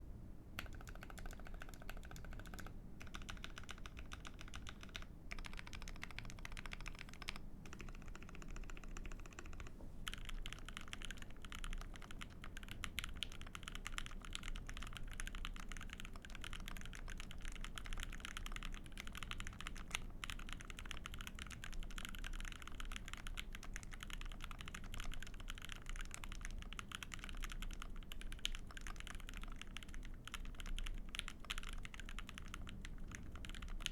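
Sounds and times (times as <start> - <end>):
mechanical keyboard typing: 0.6 - 33.9.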